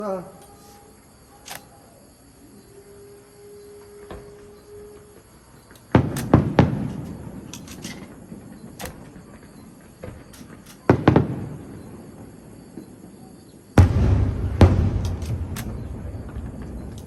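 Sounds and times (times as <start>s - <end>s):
fireworks bangs: 5.8s - 17.0s
faint fireworks pops: 5.9s - 17.0s.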